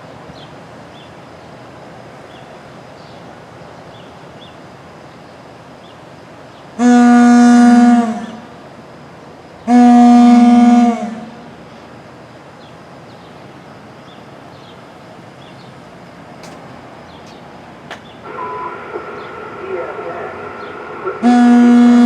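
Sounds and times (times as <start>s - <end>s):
fire alarm horn honks: 6.8s - 8.2s, 9.7s - 11.2s, 16.4s - 16.6s, 17.2s - 22.0s.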